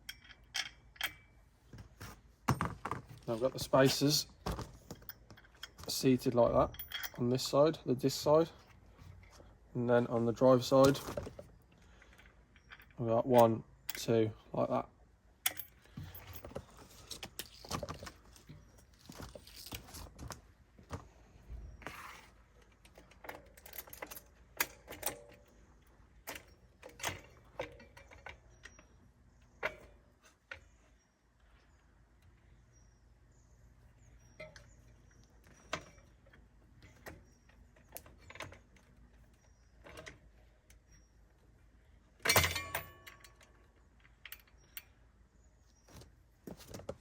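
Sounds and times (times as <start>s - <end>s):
small metallic clicks and clinks: 0.0s - 1.4s, 4.8s - 7.6s, 11.7s - 14.2s, 15.4s - 18.7s, 42.2s - 45.0s.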